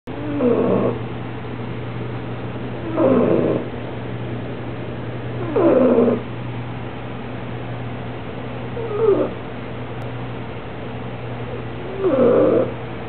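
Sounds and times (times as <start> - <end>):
steady low hum: 0.0 - 13.0
puppy snoring softly: 0.1 - 1.0, 2.8 - 3.7, 5.4 - 6.2, 8.8 - 9.4, 11.5 - 12.8.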